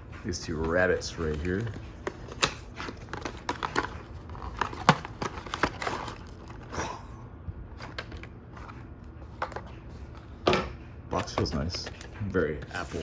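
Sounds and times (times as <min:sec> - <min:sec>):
packaging crinkling and tearing: 0:01.1 - 0:06.8.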